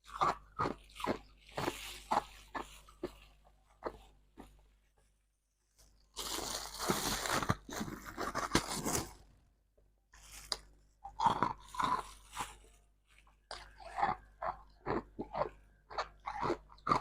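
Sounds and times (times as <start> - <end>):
frost being crunched: 6.1 - 9.3.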